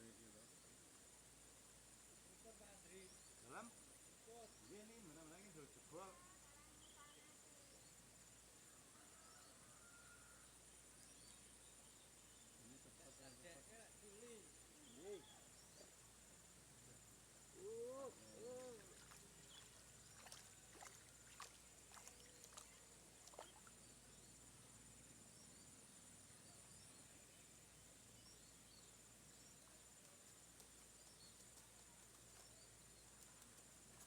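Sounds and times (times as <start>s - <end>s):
insect chirring: 10.3s - 34.0s.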